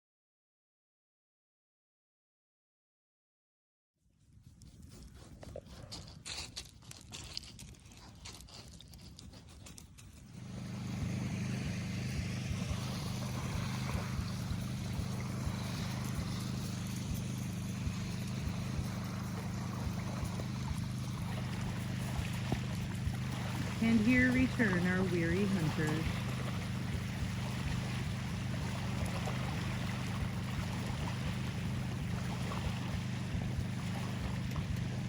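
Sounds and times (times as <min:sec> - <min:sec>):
boat engine droning: 0:10.0 - 0:35.0
trickling water: 0:10.4 - 0:35.0.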